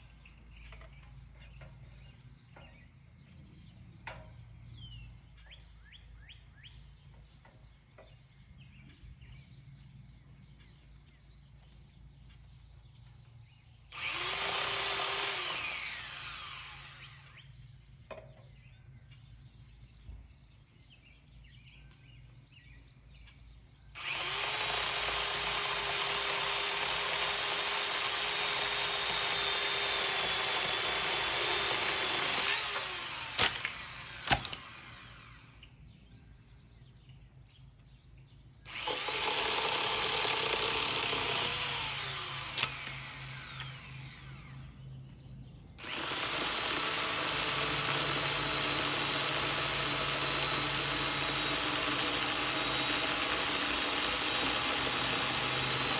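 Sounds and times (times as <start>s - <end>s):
power tool motor spinning: 13.9s - 17.4s, 24.0s - 35.7s, 38.7s - 44.7s, 45.8s - 55.9s.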